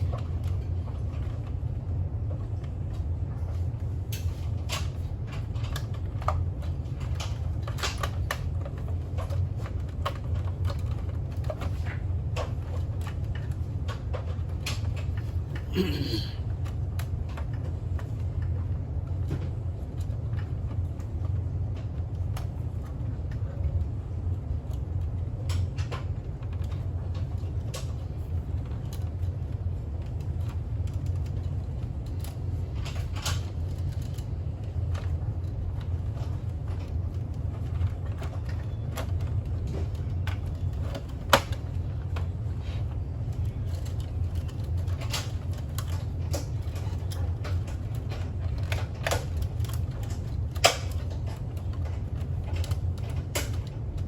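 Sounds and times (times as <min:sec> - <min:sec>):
steady low hum: 0:00.0 - 0:54.0
small clicks and knocks: 0:43.3 - 0:53.8.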